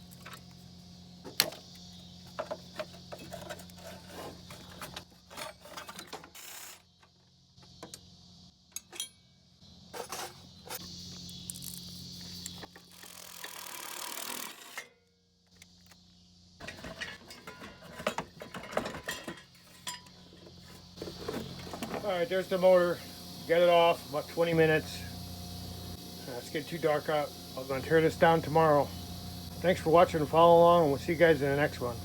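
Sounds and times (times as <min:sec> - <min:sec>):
faint steady hum: 0:00.0 - 0:32.0
metal clanks of hand tools: 0:08.7 - 0:09.2, 0:16.6 - 0:20.5.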